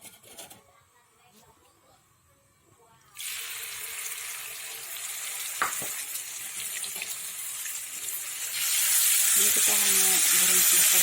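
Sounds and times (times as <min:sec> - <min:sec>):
paste sizzling in hot oil: 0:03.2 - 0:11.0.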